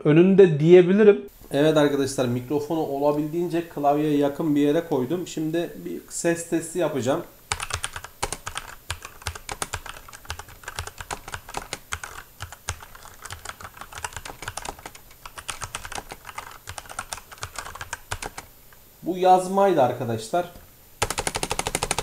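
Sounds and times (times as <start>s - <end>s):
mechanical keyboard typing: 7.5s - 18.5s, 21.0s - 22.0s.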